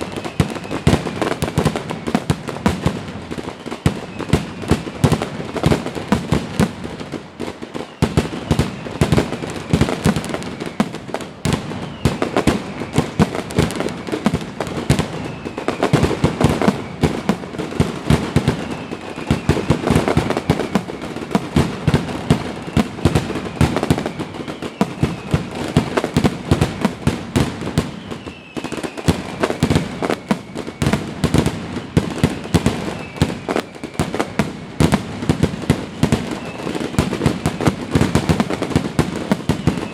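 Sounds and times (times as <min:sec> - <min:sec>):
fireworks bangs and crackling: 0:00.0 - 0:39.9
fireworks falling whistles: 0:00.0 - 0:39.9.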